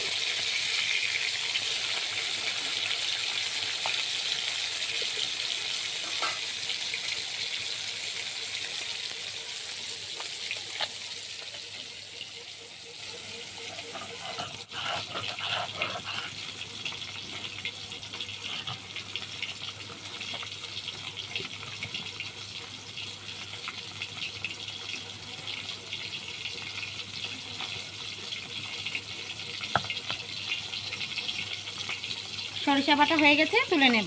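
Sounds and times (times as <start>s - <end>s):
fish frying in hot oil: 0.0s - 34.0s.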